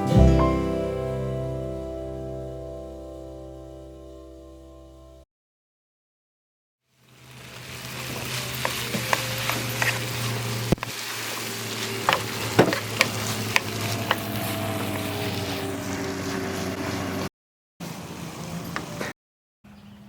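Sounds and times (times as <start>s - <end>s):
food sizzling in hot oil: 6.9s - 15.6s.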